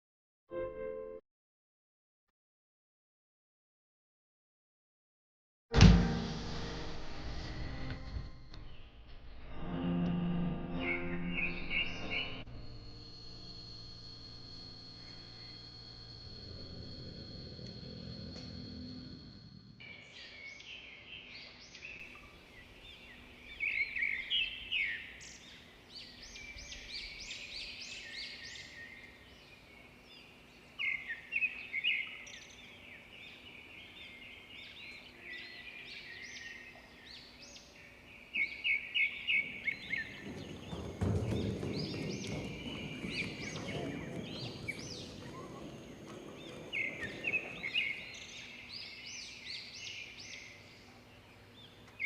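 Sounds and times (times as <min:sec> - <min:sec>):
birds singing and chirping: 0:19.8 - 0:52.0.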